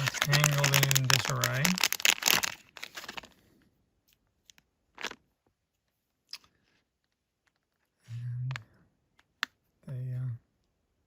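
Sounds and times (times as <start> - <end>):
crinkly rustle: 0.0 - 3.4.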